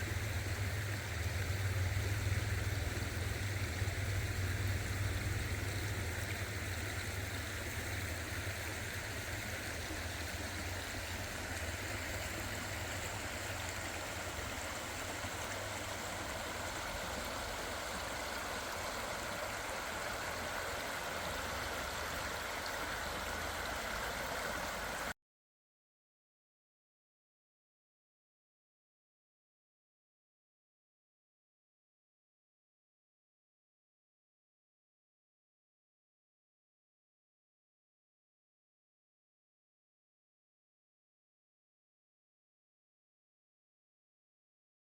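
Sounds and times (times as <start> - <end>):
creek water running: 0.0 - 25.2.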